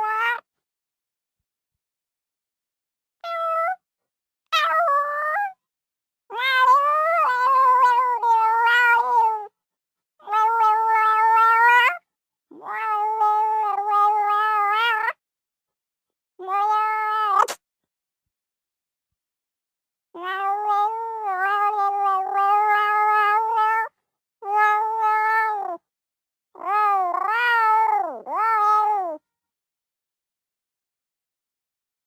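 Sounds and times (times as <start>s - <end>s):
cat meowing: 0.0s - 0.4s, 3.2s - 3.8s, 4.6s - 5.6s, 6.3s - 9.5s, 10.2s - 15.2s, 16.4s - 17.6s, 20.2s - 25.8s, 26.6s - 29.2s.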